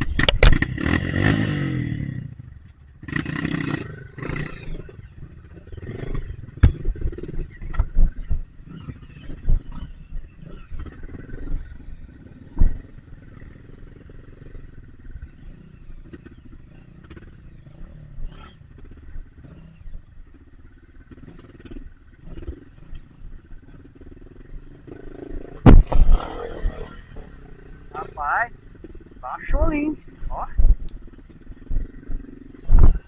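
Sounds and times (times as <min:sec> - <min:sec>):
motorcycle engine low rumble: 0:00.0 - 0:33.0
sharp knocks: 0:25.6 - 0:26.2.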